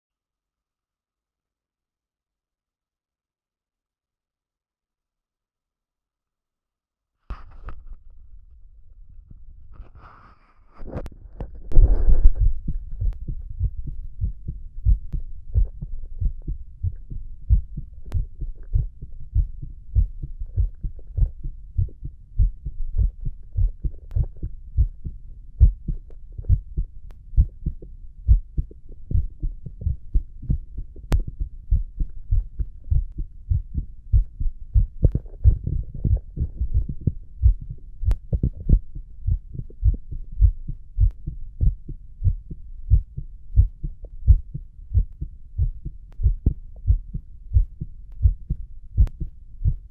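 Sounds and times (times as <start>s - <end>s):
heartbeat thumps: 10.9s - 49.9s.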